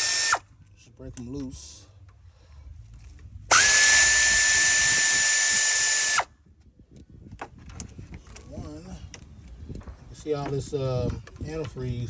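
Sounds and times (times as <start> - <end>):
power tool running: 0.0 - 0.4, 3.5 - 6.3.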